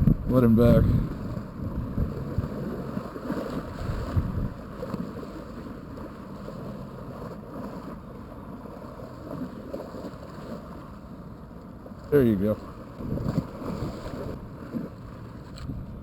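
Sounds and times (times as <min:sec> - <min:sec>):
wind rumbling on microphone: 0:00.0 - 0:11.3, 0:12.0 - 0:16.0.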